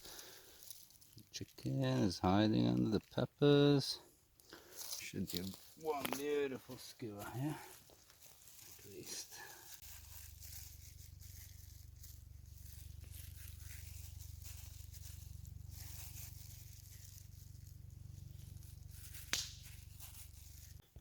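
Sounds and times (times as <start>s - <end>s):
rustling and handling: 0.0s - 21.0s
steady low hum: 9.2s - 21.0s.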